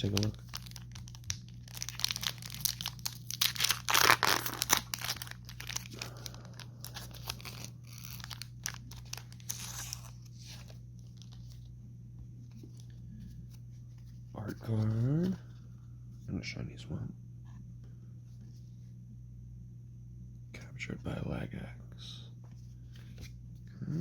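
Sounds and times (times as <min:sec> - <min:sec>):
foil wrapper tearing and crinkling: 0:00.0 - 0:11.4
low steady hum: 0:00.0 - 0:24.0.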